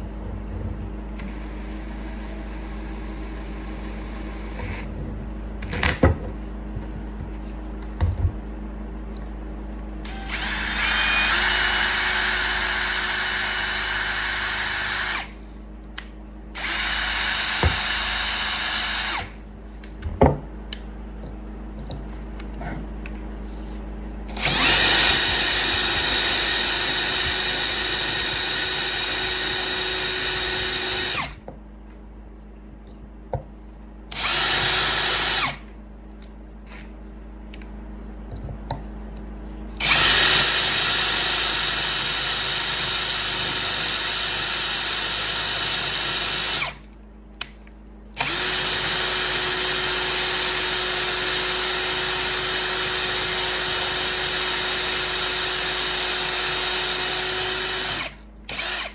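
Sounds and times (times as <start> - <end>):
electric drill running: 10.0 - 15.6, 16.6 - 19.4, 24.3 - 31.5, 34.1 - 35.7, 39.8 - 46.9, 48.2 - 58.9.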